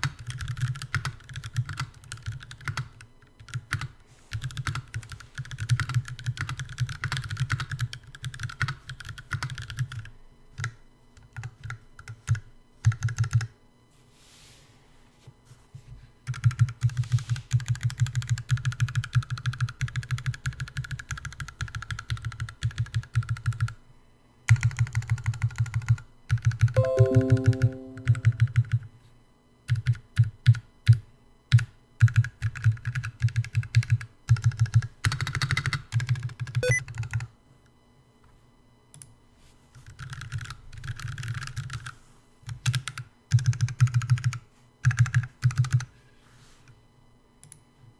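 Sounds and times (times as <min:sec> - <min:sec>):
mechanical keyboard typing: 0:00.0 - 0:10.7, 0:11.3 - 0:13.5, 0:16.3 - 0:23.8, 0:32.0 - 0:34.8, 0:40.0 - 0:41.9, 0:42.6 - 0:45.8.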